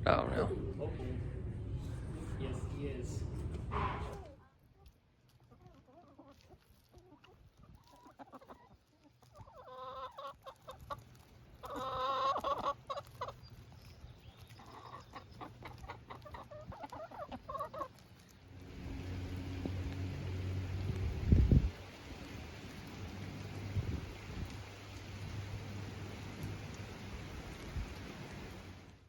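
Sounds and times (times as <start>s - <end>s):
chickens clucking: 3.8s - 19.6s.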